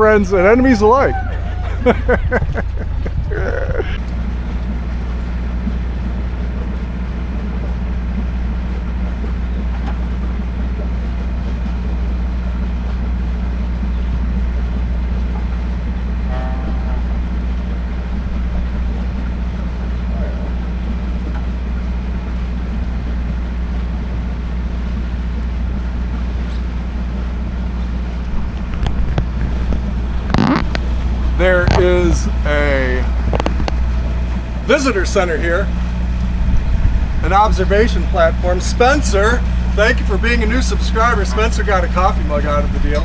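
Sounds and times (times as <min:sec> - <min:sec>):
boat engine running: 0:00.0 - 0:43.0
faint clicks: 0:33.2 - 0:34.0.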